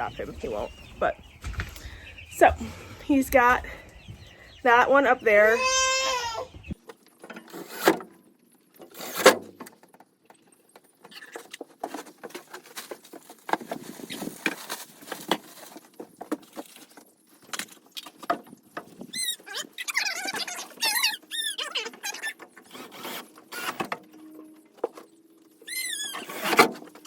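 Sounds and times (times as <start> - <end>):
rustling and clattering of objects: 0.0 - 4.6, 6.5 - 27.0
chickens chirping: 0.0 - 6.8.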